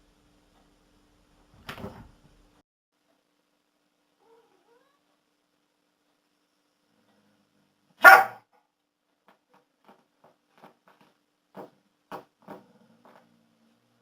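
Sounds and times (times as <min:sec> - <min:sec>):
dog barking: 0:08.0 - 0:08.4.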